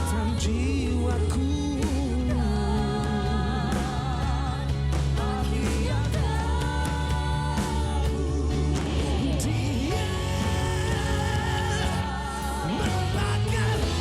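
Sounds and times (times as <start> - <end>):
live rock band playing: 7.6 - 14.0.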